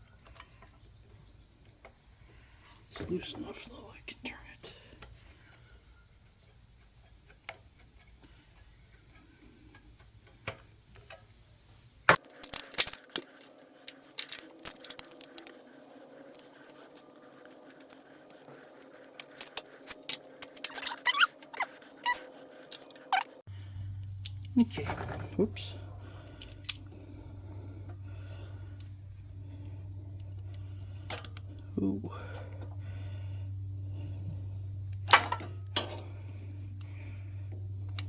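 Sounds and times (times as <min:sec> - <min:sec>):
short squeaks: 0:20.6 - 0:22.3.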